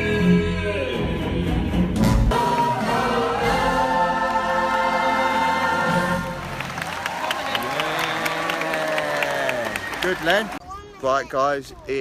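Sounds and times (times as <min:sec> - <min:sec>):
chorus singing with backing music: 0:00.0 - 0:07.0.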